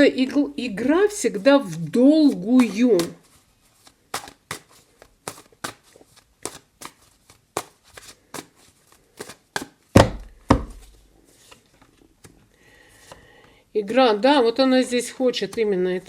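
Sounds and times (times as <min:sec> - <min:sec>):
cards thudding on a table: 0:04.1 - 0:11.0.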